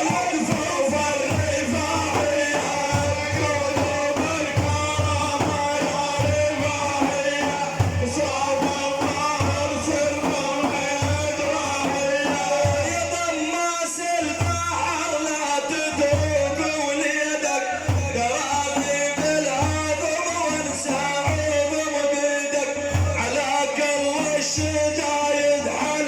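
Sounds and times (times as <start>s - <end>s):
low drum beat: 0.0s - 13.3s.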